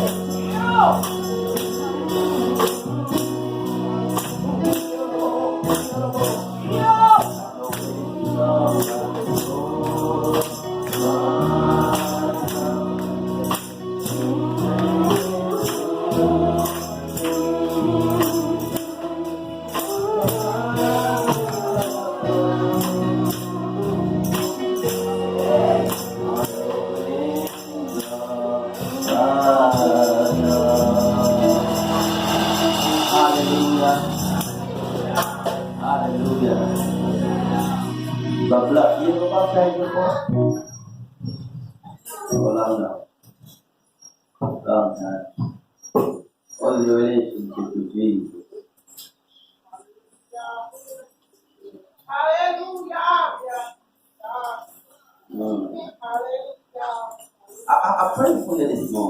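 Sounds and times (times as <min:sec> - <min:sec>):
tambourine shaken: 0:00.0 - 0:39.0, 0:57.0 - 0:59.0
voices singing gospel: 0:00.0 - 0:43.0, 0:56.8 - 0:59.0
organ chords: 0:00.0 - 0:49.6.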